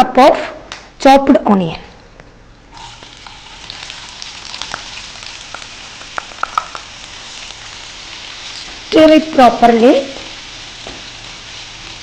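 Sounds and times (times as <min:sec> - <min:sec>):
onion sizzling in hot oil: 0:02.7 - 0:12.0.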